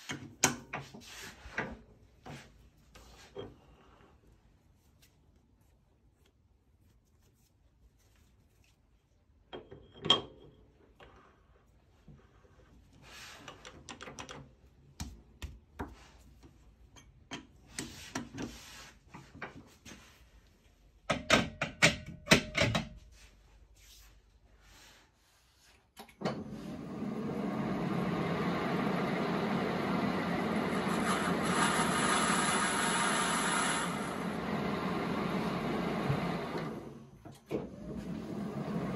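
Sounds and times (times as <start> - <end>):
machine tool motor whine: 29.1 - 37.0.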